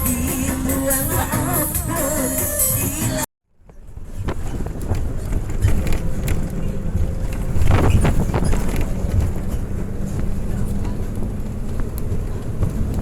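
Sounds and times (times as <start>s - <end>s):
bus engine and road rumble: 0.0s - 13.0s
wind noise: 3.6s - 13.0s.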